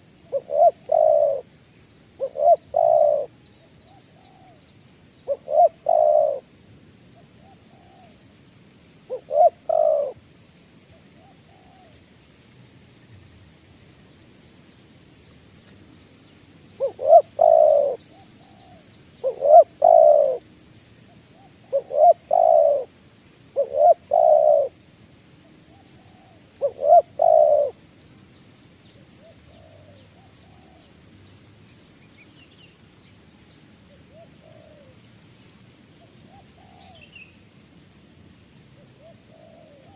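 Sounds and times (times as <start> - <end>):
bird cooing: 0.0 - 1.6, 2.2 - 6.5, 7.2 - 8.3, 9.1 - 10.2, 10.9 - 12.1, 16.7 - 22.9, 23.6 - 24.8, 25.5 - 27.8, 28.9 - 31.0, 33.8 - 35.1, 35.9 - 37.4, 38.8 - 39.9.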